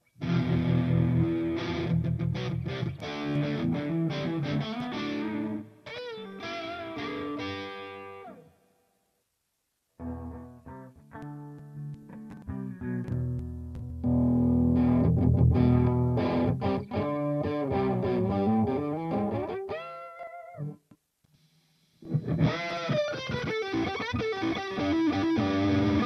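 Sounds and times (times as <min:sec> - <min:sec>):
distorted electric guitar: 0:00.0 - 0:08.5, 0:10.0 - 0:20.8, 0:22.0 - 0:26.0.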